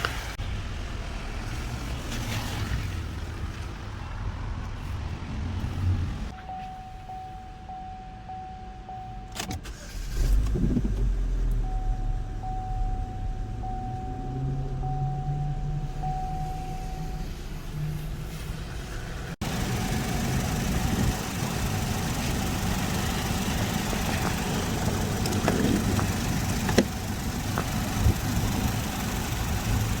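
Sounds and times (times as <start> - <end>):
car engine idling: 19.2 - 30.0.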